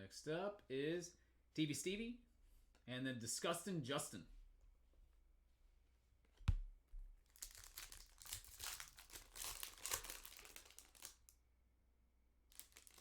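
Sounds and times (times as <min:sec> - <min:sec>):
foil wrapper crinkling and tearing: 0:07.2 - 0:11.4, 0:12.5 - 0:13.0.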